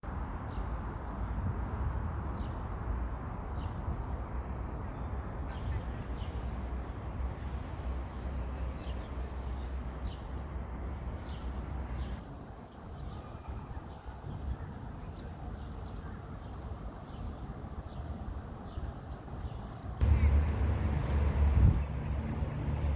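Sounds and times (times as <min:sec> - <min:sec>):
bird chirping: 0:15.0 - 0:22.7
low rumble: 0:20.0 - 0:22.9.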